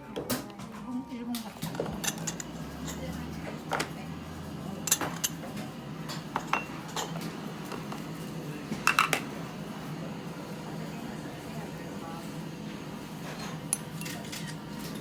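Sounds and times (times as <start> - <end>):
dishes and tableware clinking: 1.4 - 4.0, 4.8 - 8.0, 8.8 - 9.3, 13.2 - 15.0.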